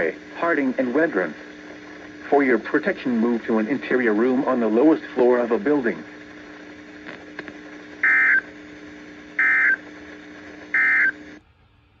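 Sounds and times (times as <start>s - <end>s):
radio hiss and hum: 0.0s - 11.4s
digital data tone bursts: 8.0s - 8.5s, 9.4s - 9.8s, 10.7s - 11.2s.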